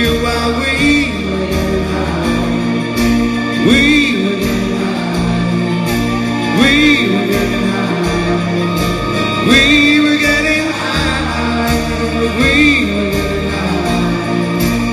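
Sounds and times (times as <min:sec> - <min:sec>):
live rock band playing: 0:00.0 - 0:14.9
swooping electric guitar lead: 0:00.0 - 0:14.9.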